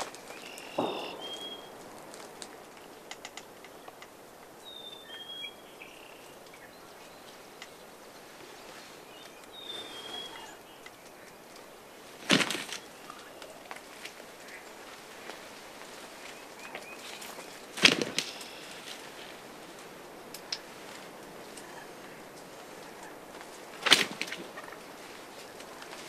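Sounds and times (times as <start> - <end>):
faint outdoor rustling: 0.0 - 26.0
small bird whistled call: 0.3 - 1.8, 4.6 - 6.3, 9.5 - 10.7
loud sudden rustling: 12.1 - 13.1, 17.7 - 19.6, 23.7 - 25.2.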